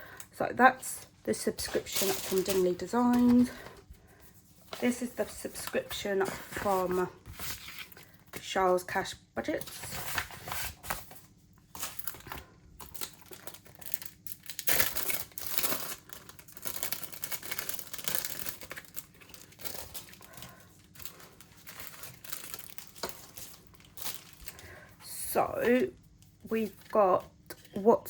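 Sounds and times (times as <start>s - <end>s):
packaging crinkled and torn: 1.7s - 3.6s, 9.7s - 24.7s.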